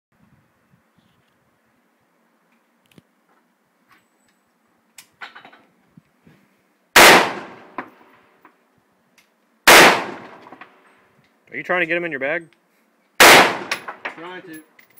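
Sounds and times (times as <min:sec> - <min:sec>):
rifle shots with echo: 0:07.0 - 0:07.9, 0:09.7 - 0:10.6, 0:13.2 - 0:14.1.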